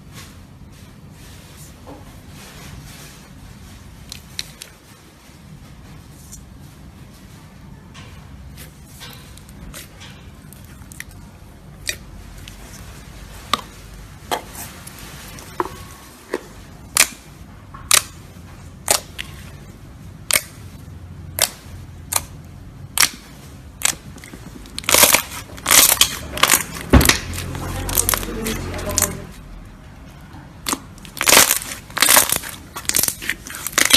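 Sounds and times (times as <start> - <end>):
slime popping and clicking: 21.4 - 22.3.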